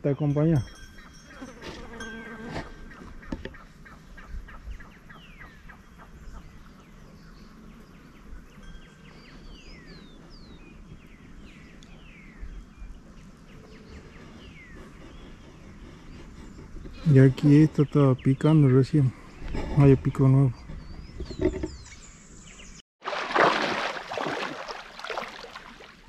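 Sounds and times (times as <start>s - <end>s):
wind: 0.0s - 26.0s
birds whistling: 13.5s - 19.5s
river: 23.0s - 26.0s.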